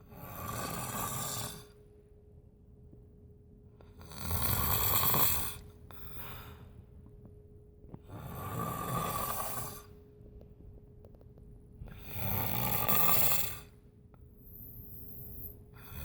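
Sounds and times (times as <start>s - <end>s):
person snoring: 0.0s - 1.8s, 4.0s - 5.6s, 8.0s - 9.9s, 11.9s - 13.8s, 15.3s - 16.0s
faint steady hum: 0.0s - 16.0s
soft breath: 3.8s - 7.2s, 11.8s - 16.0s.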